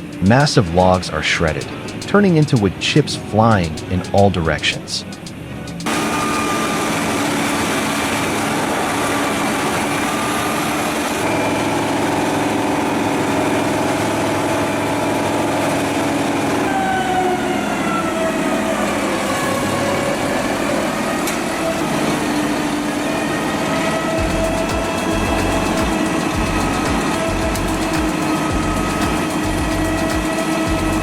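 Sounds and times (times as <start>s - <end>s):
wood chipper running under load: 5.9s - 16.6s.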